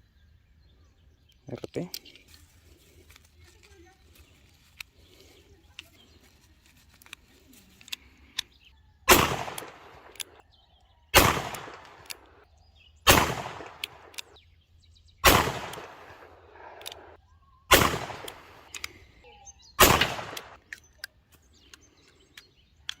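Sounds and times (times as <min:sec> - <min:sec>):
revolver shots echoing: 0:09.1 - 0:10.1, 0:11.2 - 0:12.2, 0:13.1 - 0:14.1, 0:15.2 - 0:16.8, 0:17.7 - 0:18.6, 0:19.8 - 0:20.6
faint metallic clicks: 0:09.4 - 0:10.4, 0:20.2 - 0:23.0.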